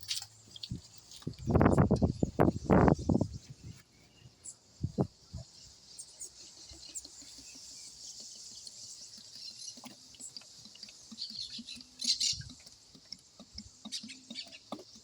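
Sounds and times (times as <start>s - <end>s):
faint knocks and clicks: 6.6s - 15.0s.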